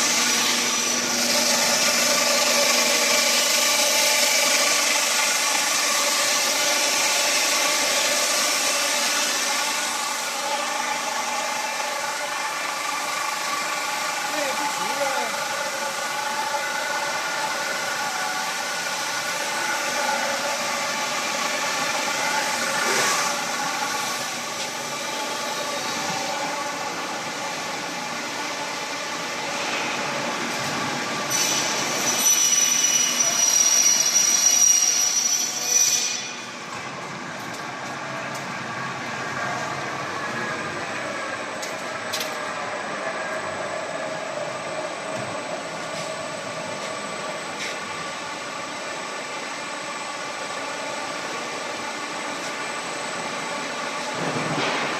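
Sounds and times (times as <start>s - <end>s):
high-pitched machine whine: 0.0s - 54.9s
production machinery humming: 0.0s - 54.9s.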